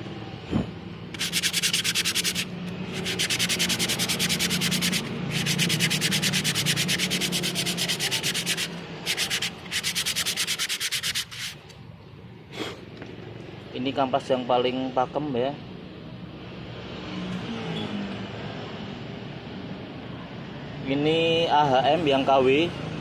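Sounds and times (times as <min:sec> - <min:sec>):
brake pad scraping on sandpaper: 0:01.2 - 0:11.7.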